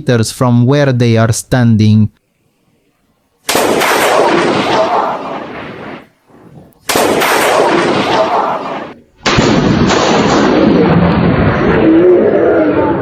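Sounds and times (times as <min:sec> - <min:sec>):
thunder cracking and rumbling: 0:03.5 - 0:13.0.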